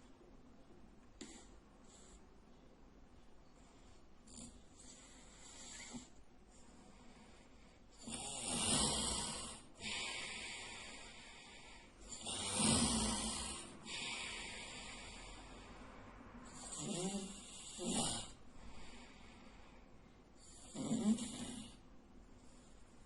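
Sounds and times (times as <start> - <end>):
quiet breathing: 0.0 - 23.0
man snoring loudly: 8.0 - 10.1, 12.1 - 14.3, 16.6 - 18.4, 20.5 - 21.8.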